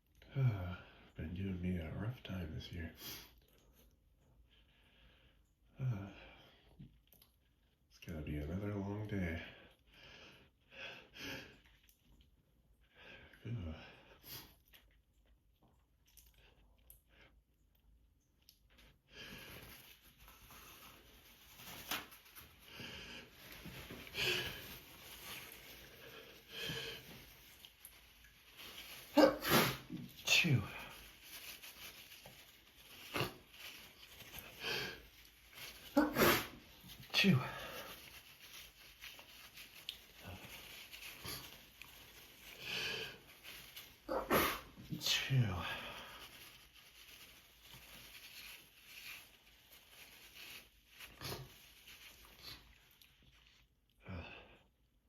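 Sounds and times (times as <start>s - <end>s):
congested breathing and sniffing: 18.4s - 45.1s
person sneezing: 29.1s - 30.0s, 35.9s - 36.6s, 44.1s - 44.8s.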